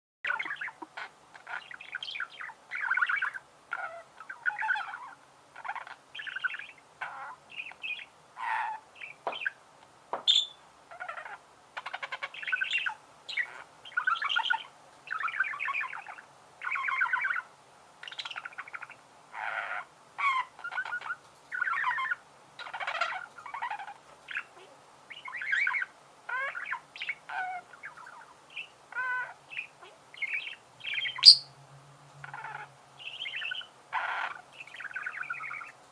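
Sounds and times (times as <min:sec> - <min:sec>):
budgerigars warbling and chirping: 0:00.2 - 0:09.6, 0:10.2 - 0:31.6, 0:32.2 - 0:35.9
loud bird squawk: 0:28.9 - 0:31.5.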